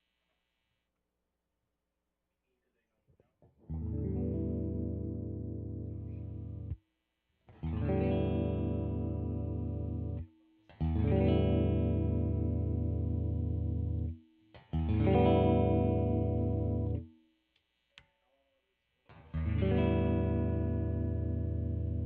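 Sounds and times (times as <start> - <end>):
electric guitar chords ringing: 3.7 - 6.8, 7.6 - 14.2, 14.8 - 17.1, 19.3 - 22.0.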